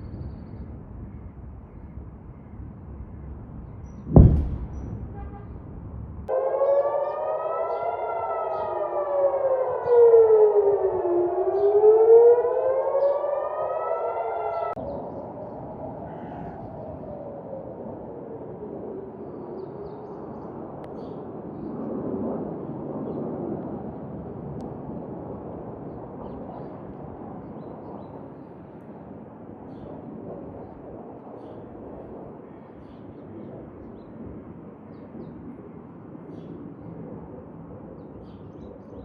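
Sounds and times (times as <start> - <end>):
distant air-raid siren wailing: 5.0 - 32.8
small birds chirping: 38.0 - 39.0.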